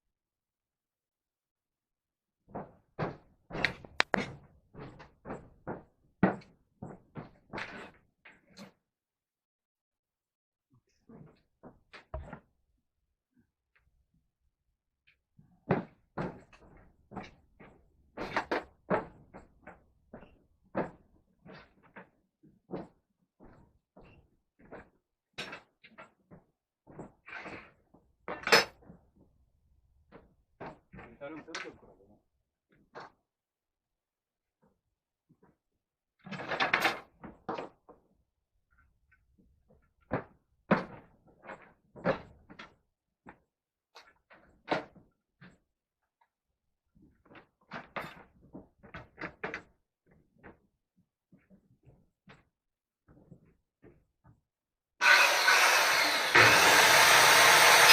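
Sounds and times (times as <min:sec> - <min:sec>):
wood scraping: 0:55.0 - 0:57.9.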